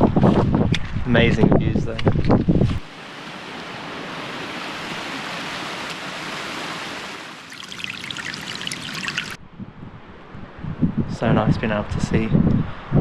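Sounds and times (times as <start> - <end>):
running water rushing: 2.8 - 9.4.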